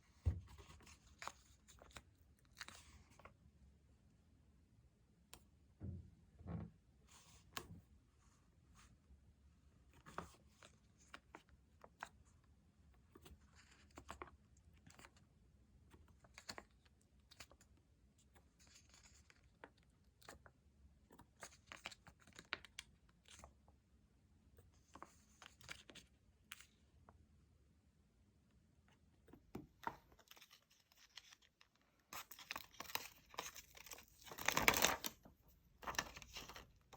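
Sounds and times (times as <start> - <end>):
paper rustling: 29.8 - 36.9.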